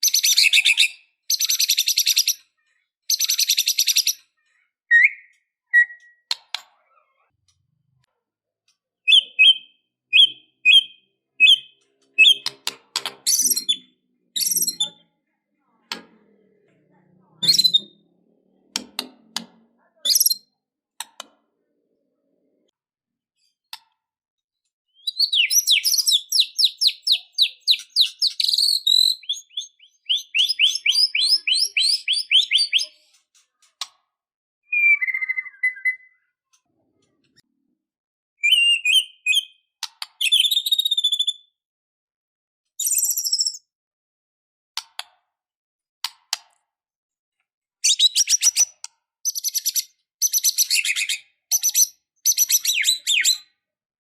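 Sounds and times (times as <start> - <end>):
low bird whistle: 4.9 - 6.3, 38.4 - 39.5
bird singing rattling notes: 9.1 - 15.0
sharp bird clicks: 10.2 - 13.8.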